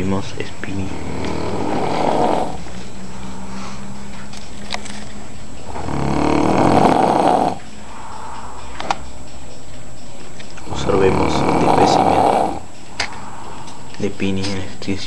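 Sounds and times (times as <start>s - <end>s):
low steady drone: 0.0s - 15.0s
person snoring: 0.8s - 2.8s, 5.7s - 8.8s, 10.6s - 12.7s.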